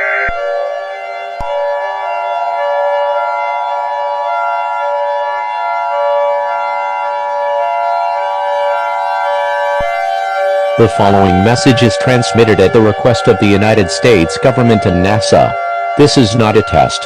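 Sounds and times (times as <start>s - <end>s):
emergency alert siren tone: 0.0s - 17.0s.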